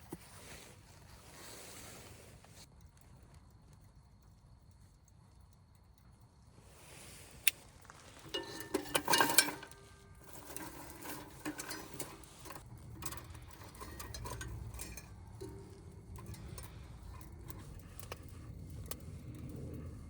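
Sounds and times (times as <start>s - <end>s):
metal clinks on fire pit: 7.4s - 20.0s.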